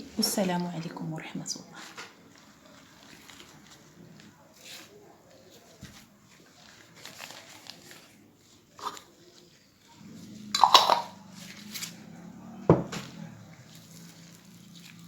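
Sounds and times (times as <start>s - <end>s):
kitchenware clinking and knocking: 10.6s - 11.2s, 12.7s - 13.0s.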